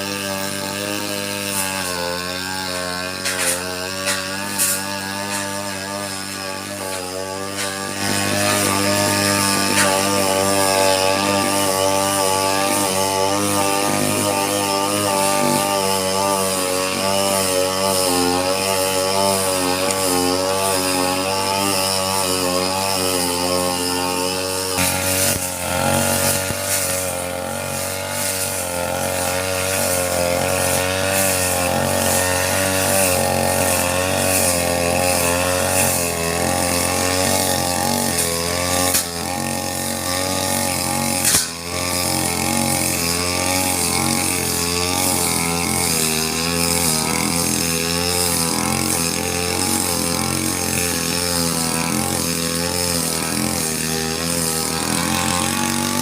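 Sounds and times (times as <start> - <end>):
brush cutter cutting grass: 0.0 - 56.0.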